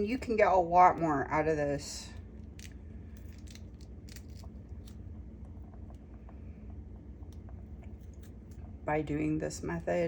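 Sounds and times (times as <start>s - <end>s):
low steady hum: 0.0s - 10.0s
pomegranate seeds crackling: 2.2s - 6.4s, 7.0s - 10.0s.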